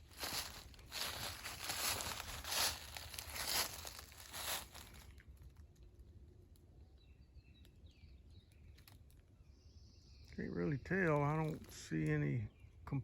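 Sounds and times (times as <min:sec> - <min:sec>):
footsteps crunching dry leaves: 0:00.0 - 0:05.2
faint bird chirps: 0:06.8 - 0:13.0.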